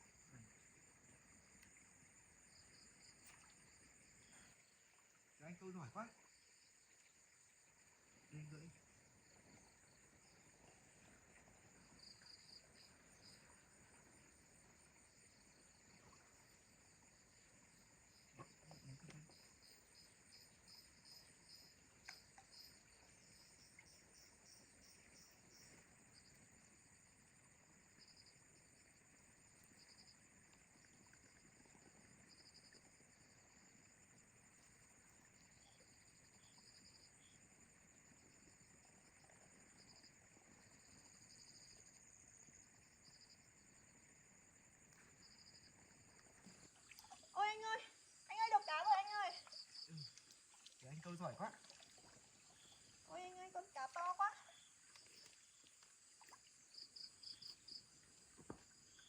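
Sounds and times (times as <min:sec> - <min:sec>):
faint insects trilling: 0:00.0 - 0:59.0
pulsed insect chirping: 0:11.8 - 0:34.5, 0:35.3 - 0:38.7, 0:39.5 - 0:51.5, 0:52.2 - 0:58.2.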